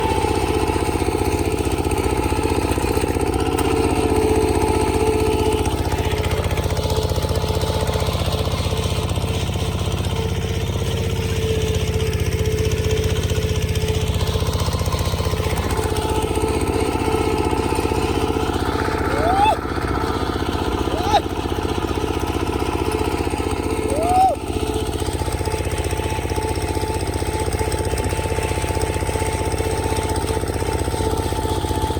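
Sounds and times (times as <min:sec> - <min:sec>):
heavy machine engine running: 0:00.0 - 0:31.9.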